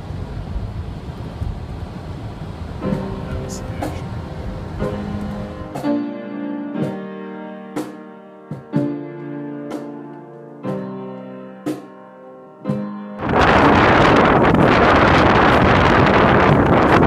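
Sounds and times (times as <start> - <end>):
piano chords ringing: 2.6 - 17.0
wind noise on microphone: 13.2 - 17.0.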